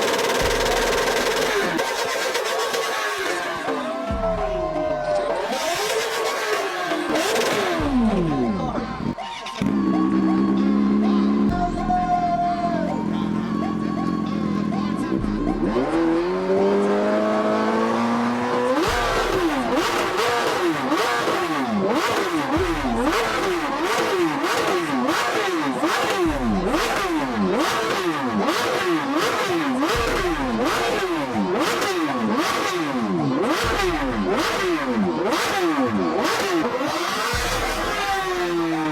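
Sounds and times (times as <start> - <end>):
exhaust cracks: 0.0 - 10.1, 18.7 - 38.9
motorcycle engine revving: 0.0 - 38.9.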